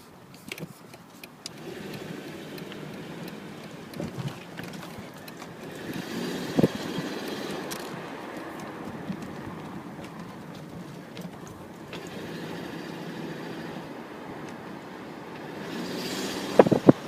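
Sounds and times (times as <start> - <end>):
car engine running under load: 0.0 - 17.0
rattling clicks: 0.3 - 12.5.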